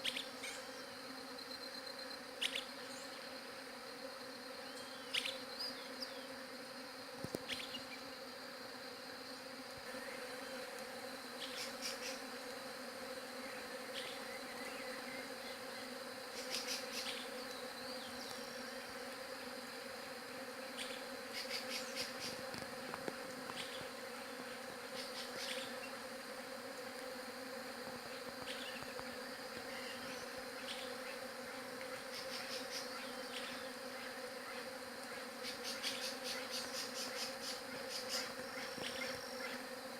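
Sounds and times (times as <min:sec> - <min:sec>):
bees buzzing: 0:00.0 - 0:39.9.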